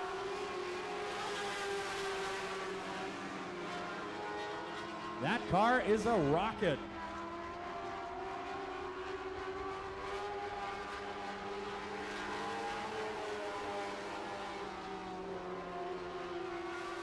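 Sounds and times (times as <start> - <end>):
racing car engines: 6.6 - 17.0.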